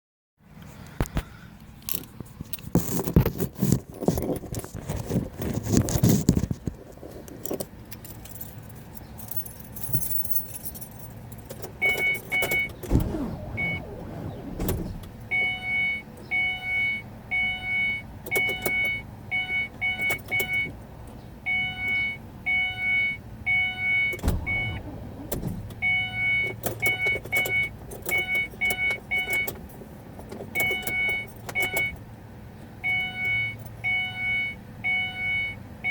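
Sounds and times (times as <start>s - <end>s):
car keys jangling: 1.8s - 16.3s, 19.9s - 20.7s, 24.1s - 32.0s, 33.2s - 33.9s
car warning chime beeping: 11.8s - 20.8s, 21.4s - 29.6s, 30.6s - 32.0s, 32.8s - 35.9s.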